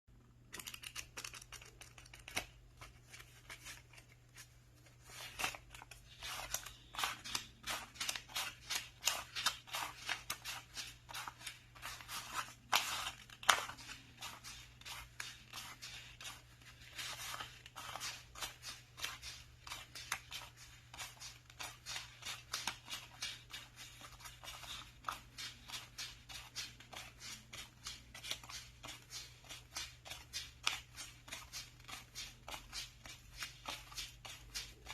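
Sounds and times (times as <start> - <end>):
banknotes flicking and rustling: 0.4 - 34.9
banknotes snapping: 0.5 - 2.6.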